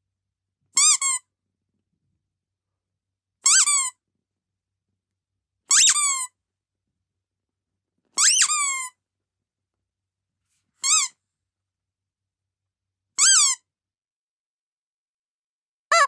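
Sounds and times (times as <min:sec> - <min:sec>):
squeaky dog toy squeaking: 0:00.8 - 0:01.2, 0:03.4 - 0:04.0, 0:05.7 - 0:06.3, 0:08.2 - 0:09.0, 0:10.8 - 0:11.2, 0:13.2 - 0:13.6.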